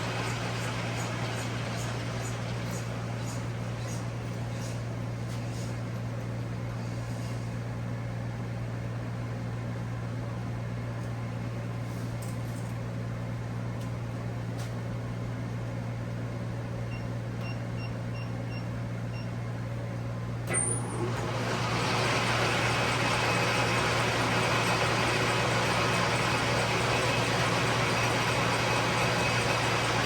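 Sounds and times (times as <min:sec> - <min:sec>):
lathe humming: 0:00.0 - 0:03.6, 0:21.0 - 0:30.0.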